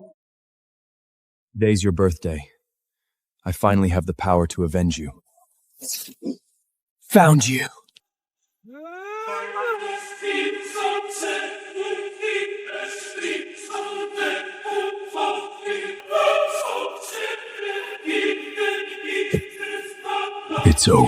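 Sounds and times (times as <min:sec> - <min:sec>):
choir singing held chords: 0:09.0 - 0:21.0.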